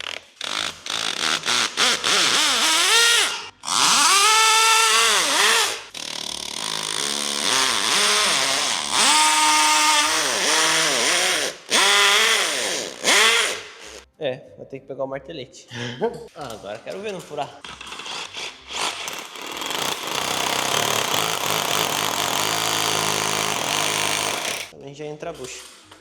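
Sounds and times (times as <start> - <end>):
cordless drill whining: 0.5 - 14.0, 19.1 - 24.7.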